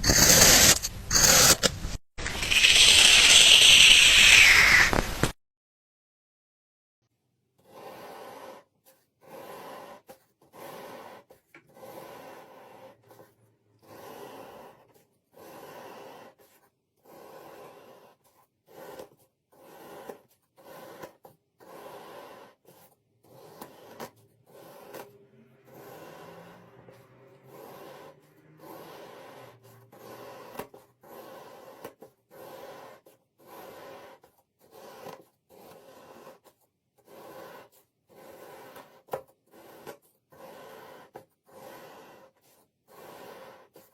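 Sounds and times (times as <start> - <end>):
kinetic sand being cut: 0.0 - 5.4.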